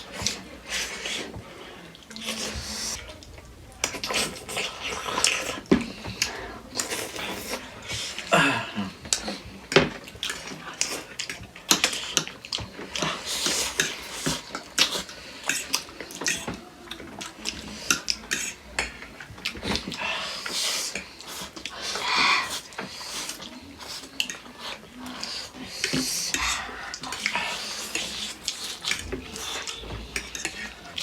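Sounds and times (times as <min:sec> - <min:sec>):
people chewing and lip-smacking: 0:00.0 - 0:31.0
cutlery and dishes clinking: 0:27.0 - 0:31.0.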